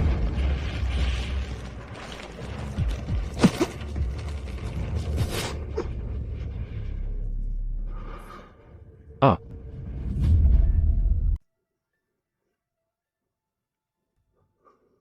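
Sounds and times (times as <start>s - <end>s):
steady low rumble: 0.0s - 11.4s.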